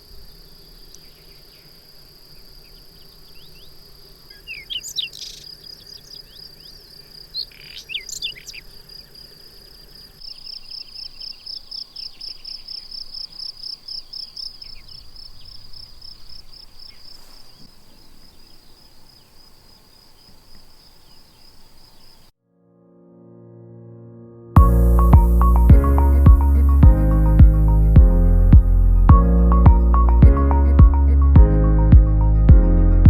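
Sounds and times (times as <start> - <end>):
crickets trilling: 0.0 - 22.3
nearby cricket pulsing song: 0.0 - 22.3, 24.6 - 31.9
bird chirps: 2.6 - 9.2, 9.9 - 22.3.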